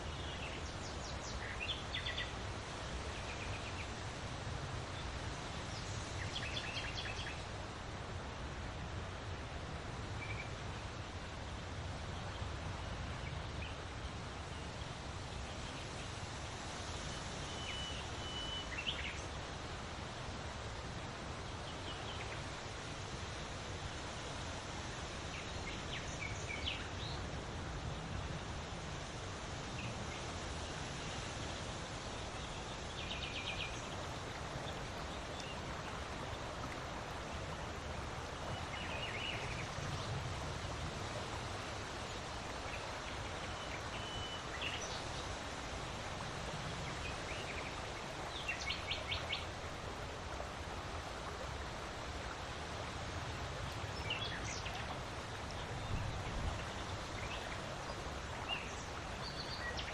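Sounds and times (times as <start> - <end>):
small birds chirping: 32.5 - 45.6
wind blowing: 33.2 - 59.9.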